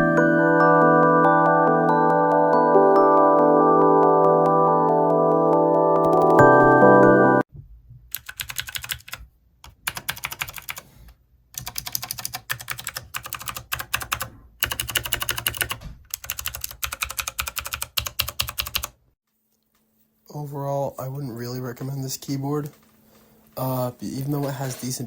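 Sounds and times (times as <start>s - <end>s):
background music: 0.0s - 7.5s
clicky mechanical keyboard typing: 6.0s - 6.4s, 8.1s - 10.8s, 11.6s - 19.0s.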